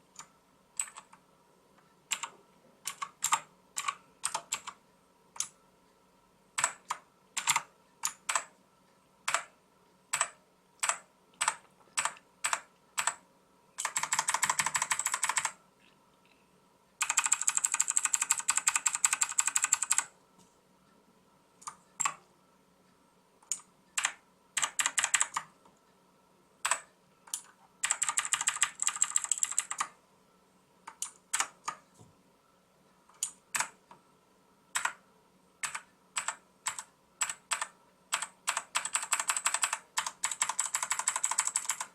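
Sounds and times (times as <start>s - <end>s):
clicky mechanical keyboard typing: 0.1s - 1.2s, 2.1s - 4.8s, 6.6s - 8.5s, 9.3s - 9.5s, 10.1s - 13.2s, 13.8s - 15.6s, 17.0s - 20.1s, 21.6s - 22.2s, 23.4s - 25.6s, 26.6s - 30.0s, 30.8s - 31.8s, 33.1s - 34.0s, 34.7s - 35.0s, 35.6s - 41.9s.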